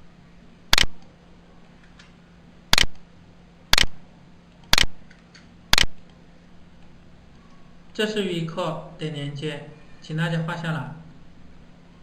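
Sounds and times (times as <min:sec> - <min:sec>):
sharp clicks: 0:00.7 - 0:01.1, 0:02.7 - 0:03.0, 0:03.7 - 0:04.0, 0:04.6 - 0:06.2.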